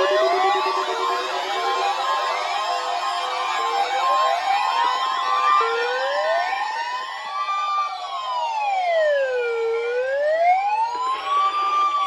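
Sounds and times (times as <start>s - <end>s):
siren wailing: 0.0s - 3.6s.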